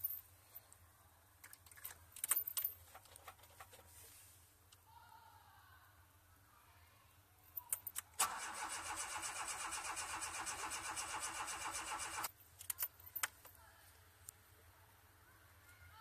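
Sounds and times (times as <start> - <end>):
starter motor cranking engine: 8.2 - 12.3.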